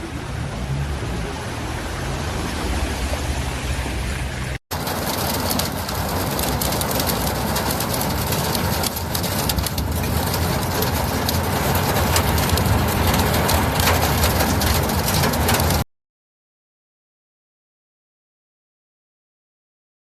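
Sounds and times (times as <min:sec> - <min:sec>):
heavy rain: 0:00.0 - 0:15.8.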